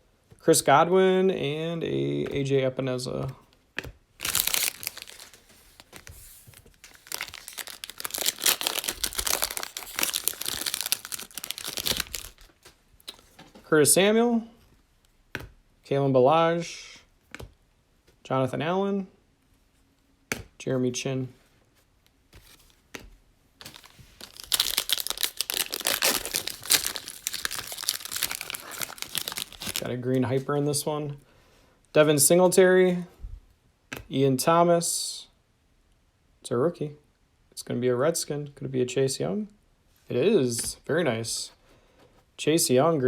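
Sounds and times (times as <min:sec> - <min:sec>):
plastic wrapper tearing and crinkling: 0:04.2 - 0:13.2, 0:23.6 - 0:30.0.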